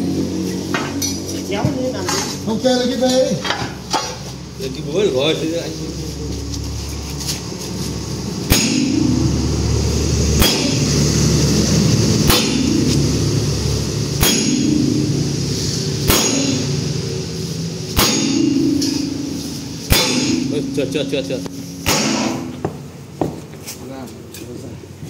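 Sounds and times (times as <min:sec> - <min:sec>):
steady low hum: 0:00.0 - 0:25.0
hammer striking metal wheel: 0:08.4 - 0:23.5.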